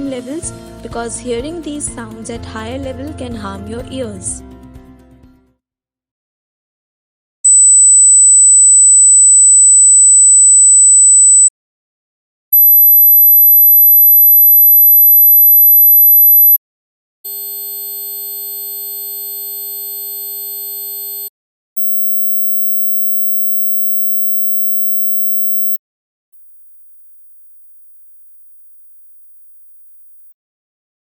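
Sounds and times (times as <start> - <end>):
high-pitched sine tones: 7.5 - 11.5, 20.1 - 25.8.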